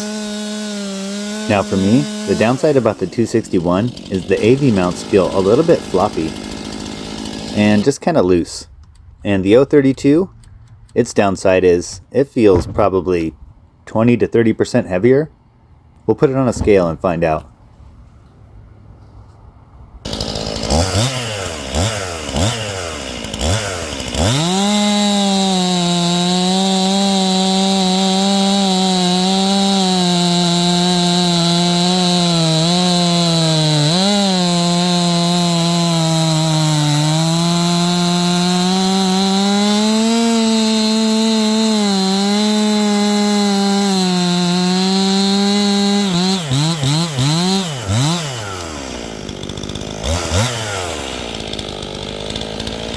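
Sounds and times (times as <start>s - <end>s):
chainsaw revving and cutting wood: 0.0s - 8.7s, 20.0s - 52.9s.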